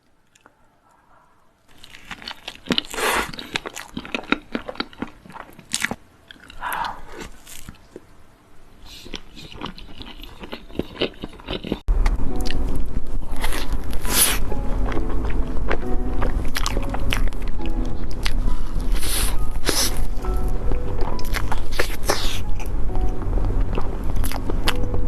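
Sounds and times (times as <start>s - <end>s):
chewing cake: 1.7s - 8.1s, 8.8s - 12.6s, 13.3s - 22.7s
steady low hum: 11.8s - 25.0s.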